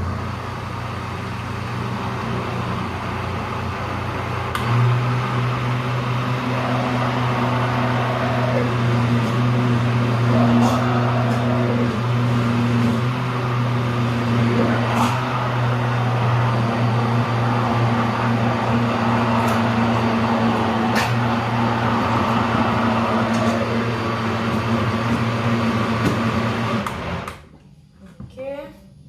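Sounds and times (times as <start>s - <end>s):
blender motor running: 1.7s - 27.4s.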